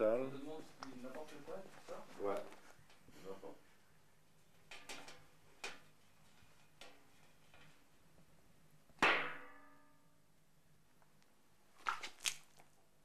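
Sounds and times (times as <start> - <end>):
metal tray struck ringing: 9.0 - 10.0.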